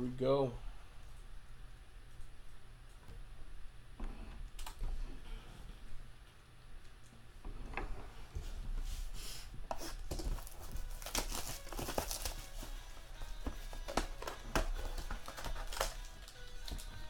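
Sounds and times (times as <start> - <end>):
plastic wrap crinkling and tearing: 9.8 - 17.0.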